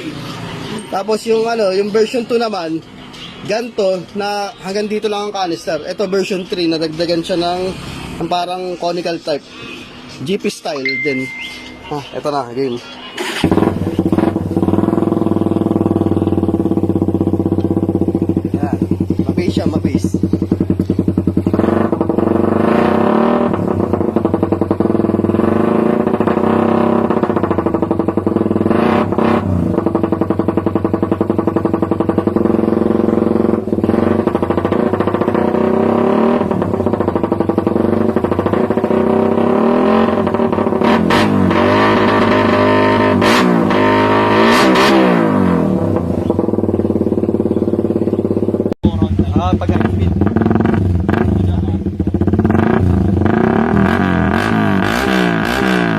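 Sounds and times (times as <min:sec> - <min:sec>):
motorcycle engine revving: 0:00.0 - 0:09.4, 0:13.2 - 0:55.9.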